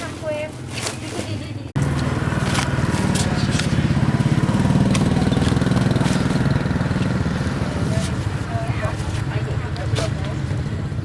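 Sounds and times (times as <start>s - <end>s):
small engine throbbing: 1.8s - 8.1s.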